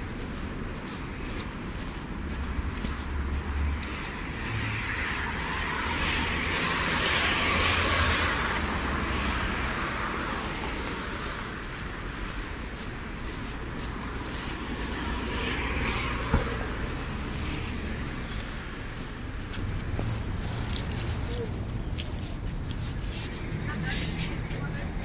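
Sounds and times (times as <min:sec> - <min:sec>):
car passing by: 0:03.0 - 0:11.7, 0:14.9 - 0:19.0.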